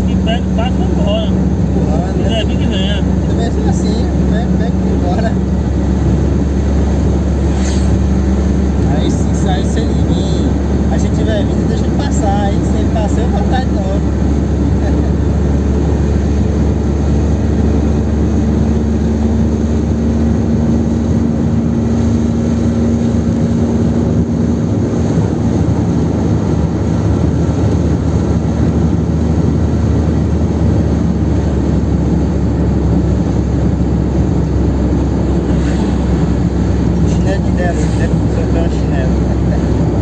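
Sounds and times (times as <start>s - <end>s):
steady hum: 0.0s - 16.9s, 31.9s - 40.0s
car cabin road noise rumble: 0.0s - 40.0s.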